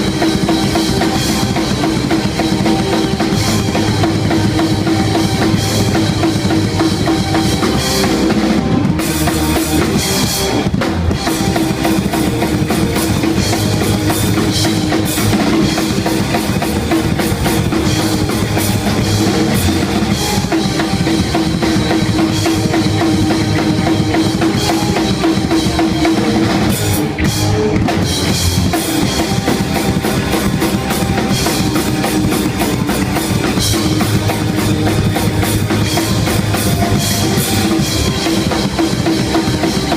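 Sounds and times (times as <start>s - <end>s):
drum kit playing: 0.0s - 39.9s
punk band playing: 0.0s - 39.9s.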